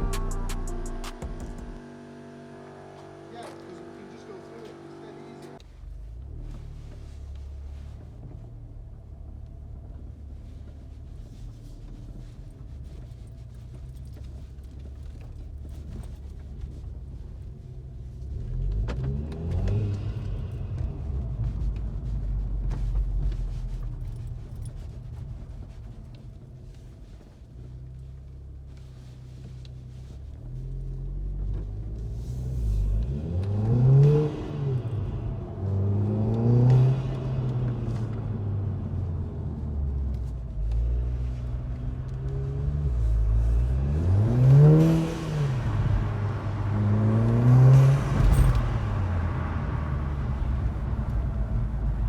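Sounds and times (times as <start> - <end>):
car engine revving: 0.0 - 7.2, 18.1 - 25.2, 31.5 - 52.0.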